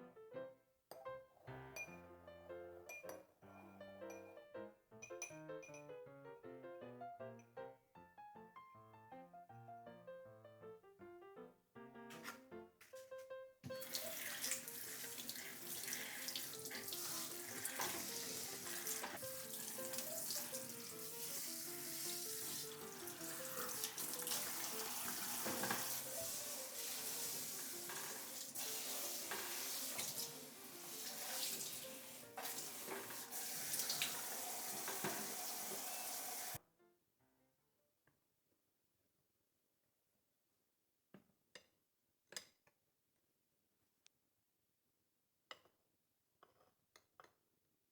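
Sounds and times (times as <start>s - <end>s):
soft background music: 0.0s - 36.9s
tap water running into sink: 13.7s - 36.6s.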